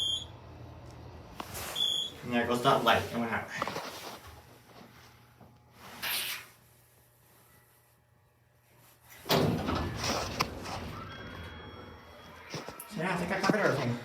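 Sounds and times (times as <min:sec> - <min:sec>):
elevator doors sliding open: 0:09.2 - 0:11.9.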